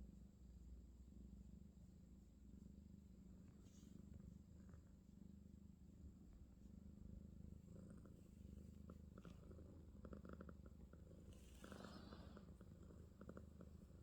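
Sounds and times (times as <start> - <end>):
cat purring: 2.4 - 14.0.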